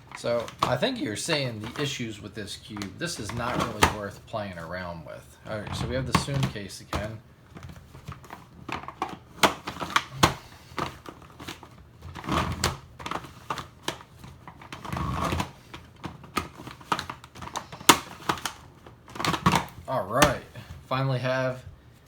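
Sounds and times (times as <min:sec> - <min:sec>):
plastic scraping rasps: 0:05.5 - 0:20.5.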